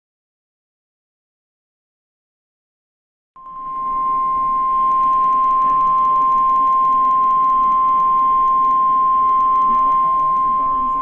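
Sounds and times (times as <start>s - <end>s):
steady alarm tone: 3.4s - 11.0s.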